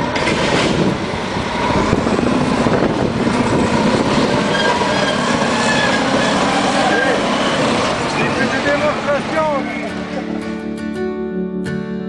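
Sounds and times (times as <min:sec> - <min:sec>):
diesel engine under load: 0:00.0 - 0:10.2
steel tracks clattering: 0:00.0 - 0:10.2
faint high squeals: 0:04.4 - 0:08.4.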